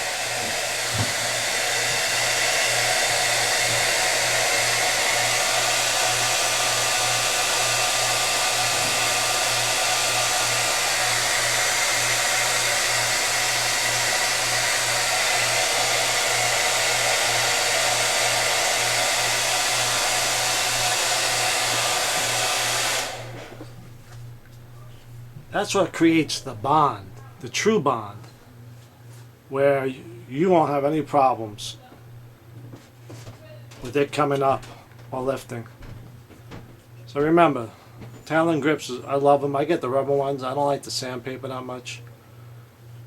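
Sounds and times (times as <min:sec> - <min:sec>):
hair dryer running: 0:00.0 - 0:27.2.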